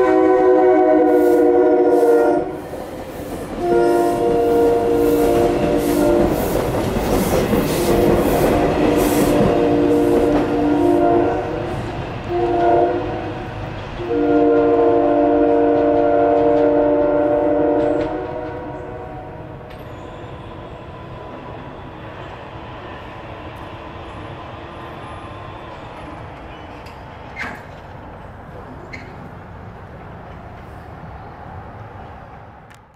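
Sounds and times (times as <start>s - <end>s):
train horn blasts: 0.0s - 2.6s, 3.6s - 6.6s, 7.7s - 19.7s
train wheels clattering on rail: 2.6s - 22.4s, 23.0s - 30.9s.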